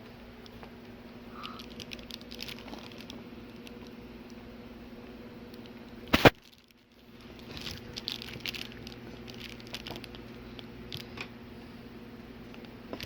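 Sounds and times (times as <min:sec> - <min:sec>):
low electrical hum: 0:00.0 - 0:13.0
crackling clicks of handled strips: 0:01.4 - 0:04.4, 0:05.5 - 0:11.3.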